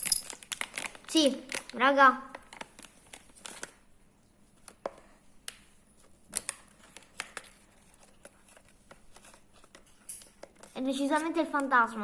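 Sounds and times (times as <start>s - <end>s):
plastic bag rustling: 0.0s - 3.9s.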